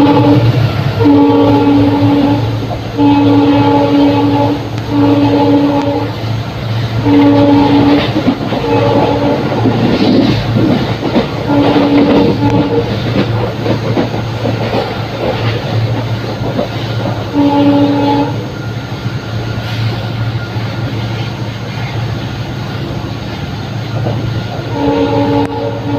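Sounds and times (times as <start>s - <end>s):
locomotive horn blasts: 0.0s - 6.3s, 6.9s - 10.0s, 11.1s - 13.2s, 17.2s - 18.5s, 24.6s - 25.9s
train wheels clattering on track: 0.0s - 25.9s.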